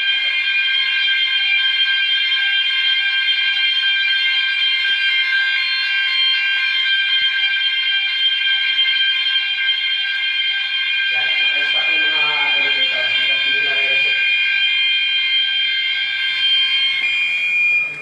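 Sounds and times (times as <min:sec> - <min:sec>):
fire alarm sounders: 0:00.0 - 0:18.0.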